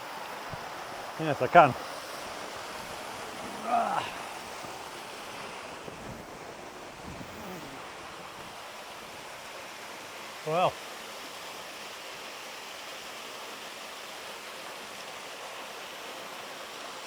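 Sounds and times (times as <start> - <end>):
waterfall rushing onto rock: 0.0 - 17.0
person vocal sound: 3.3 - 4.4, 7.2 - 8.0.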